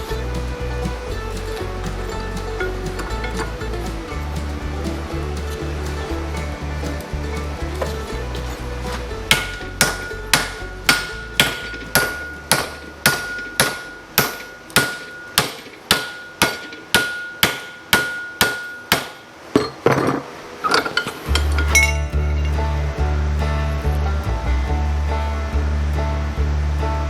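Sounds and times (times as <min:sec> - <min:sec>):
metal scraping rattle: 0:00.0 - 0:15.8
hammer striking steel plate: 0:09.3 - 0:19.2.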